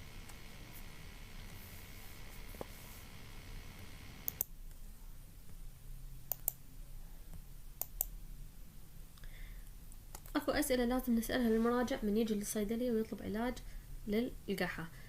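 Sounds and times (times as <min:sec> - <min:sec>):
faint background hum: 0:00.0 - 0:15.0
sharp clicks: 0:04.2 - 0:04.6, 0:06.3 - 0:06.6.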